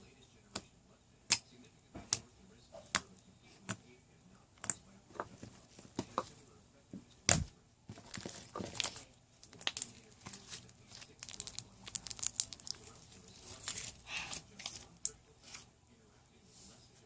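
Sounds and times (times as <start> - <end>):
slime squished by hand: 11.1 - 13.1.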